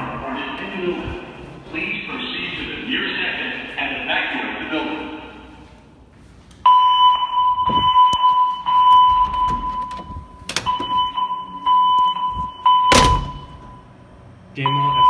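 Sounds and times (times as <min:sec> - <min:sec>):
high electronic alarm tone: 0:06.7 - 0:13.9.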